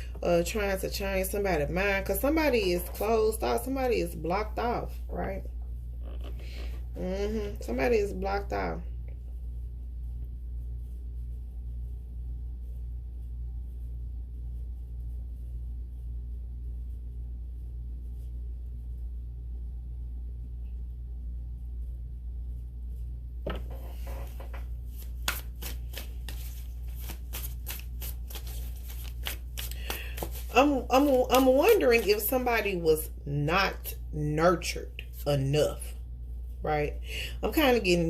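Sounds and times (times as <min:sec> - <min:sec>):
steady low hum: 0:00.0 - 0:38.0
cards being shuffled: 0:23.4 - 0:32.5.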